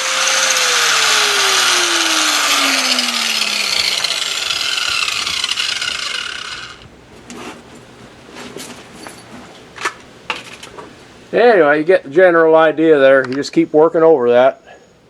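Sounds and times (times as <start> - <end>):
hand-held grinder grinding steel: 0.0 - 6.8.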